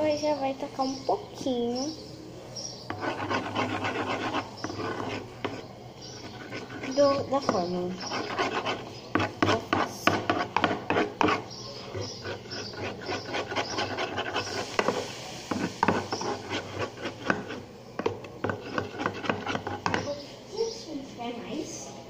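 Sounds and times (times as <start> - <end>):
utensil scraping slime in container: 2.9 - 17.6.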